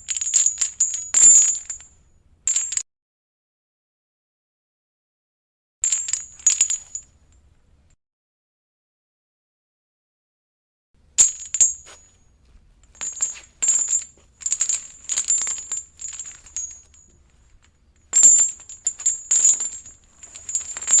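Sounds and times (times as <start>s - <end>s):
metal chain rattling: 0.0s - 2.8s, 5.8s - 7.1s, 11.2s - 21.0s.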